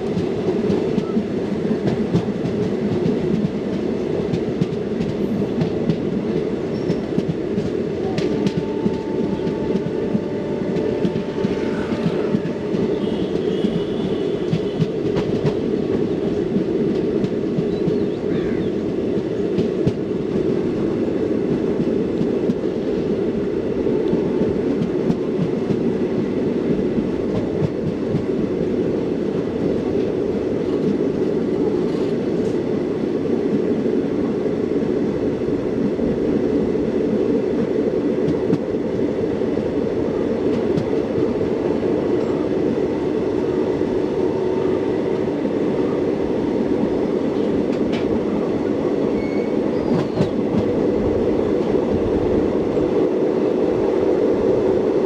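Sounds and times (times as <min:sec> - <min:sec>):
train wheels rumbling on rails: 0:00.0 - 0:55.0.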